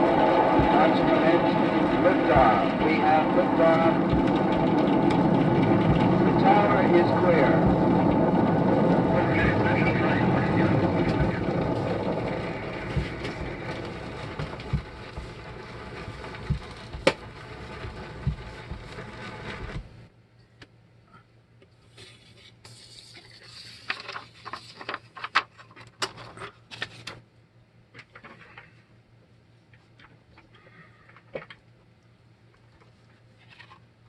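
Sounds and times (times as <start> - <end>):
recorded rocket launch roar: 0.0 - 20.1
vinyl record crackles: 0.0 - 20.1, 21.9 - 27.2.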